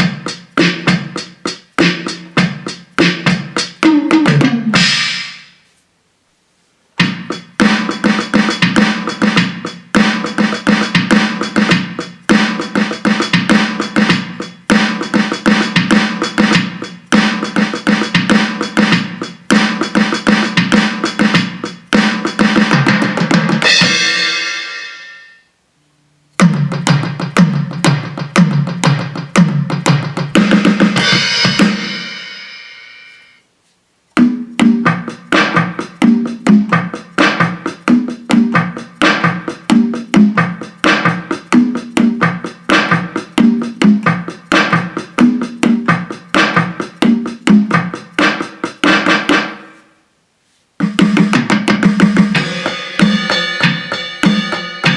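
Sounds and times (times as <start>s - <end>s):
electronic drum groove: 0.0s - 5.6s, 7.0s - 25.4s, 26.4s - 32.8s, 34.2s - 49.9s, 50.8s - 54.9s
ringing cymbal: 23.7s - 25.5s, 52.4s - 54.9s.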